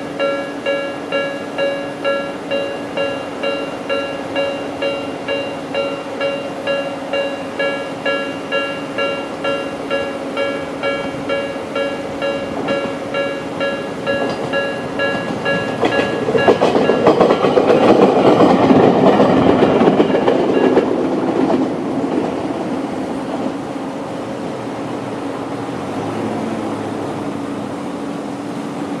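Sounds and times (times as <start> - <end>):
level crossing alarm bell: 0.0 - 18.4
train wheels clacking over rail joints: 0.0 - 23.6.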